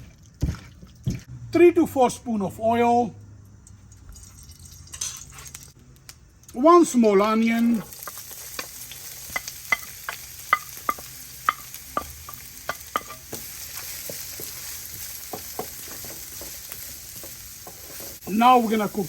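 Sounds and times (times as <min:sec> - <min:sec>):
onion sizzling in oil: 0:04.2 - 0:19.0
spoon scraping and tapping pan: 0:07.2 - 0:18.3.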